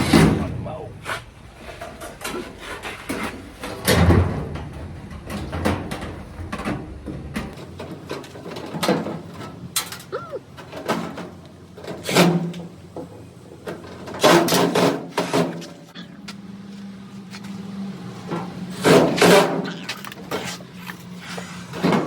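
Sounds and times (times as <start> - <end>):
low steady hum: 0.0 - 8.7
dryer parts knocking and scraping: 0.0 - 22.0.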